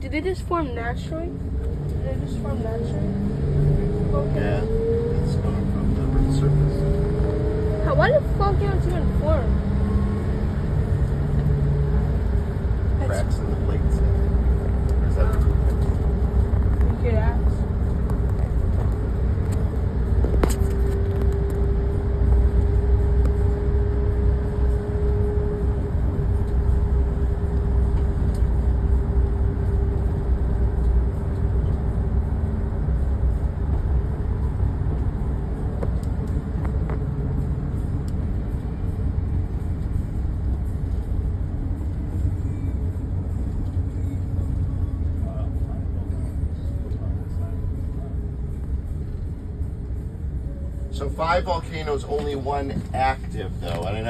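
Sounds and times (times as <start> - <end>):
road and engine rumble: 0.0 - 54.0.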